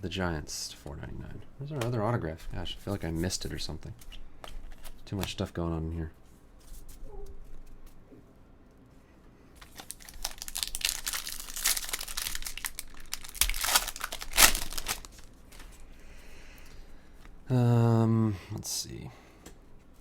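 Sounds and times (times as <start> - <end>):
card wrappers crinkling and tearing: 9.6 - 15.8.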